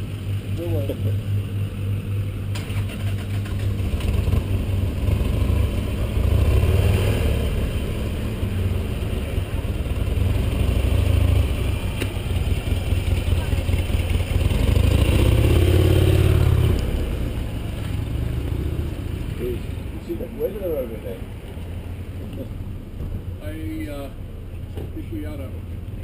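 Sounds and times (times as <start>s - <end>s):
motorcycle engine running: 0.0s - 19.9s
road noise: 0.0s - 26.0s.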